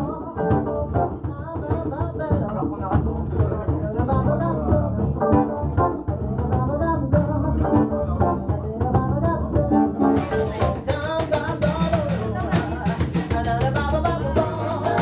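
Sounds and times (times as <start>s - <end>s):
live band playing: 5.1s - 8.8s, 9.6s - 15.0s.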